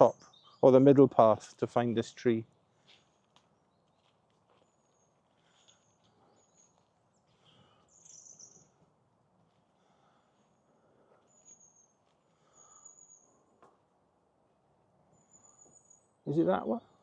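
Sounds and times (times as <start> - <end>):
soft low rustle: 2.7 - 14.0.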